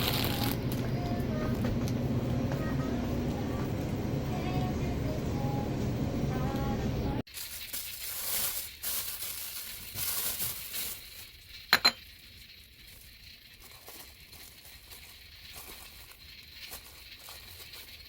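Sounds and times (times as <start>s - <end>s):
rustling handling noise: 7.3s - 18.0s
dishware clinking: 11.7s - 12.0s.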